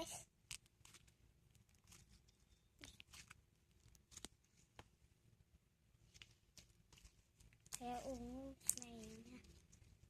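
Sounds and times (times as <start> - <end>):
faint clicks of objects handled: 0.2 - 5.0, 6.0 - 10.0.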